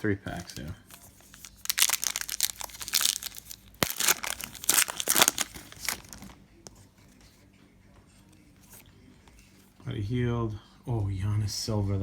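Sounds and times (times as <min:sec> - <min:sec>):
foil wrapper tearing and crinkling: 0:01.2 - 0:06.3.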